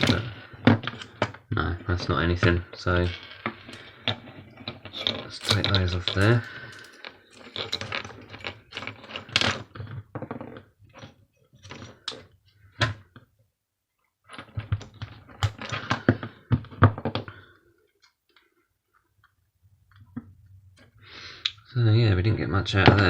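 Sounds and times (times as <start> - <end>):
metal parts clicking and clattering: 5.0 - 8.1.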